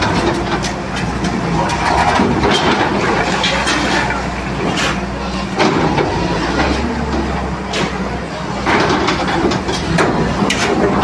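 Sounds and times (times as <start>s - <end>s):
debris crunching and clattering: 0.0s - 4.9s
heavy machine engine humming: 0.0s - 11.0s.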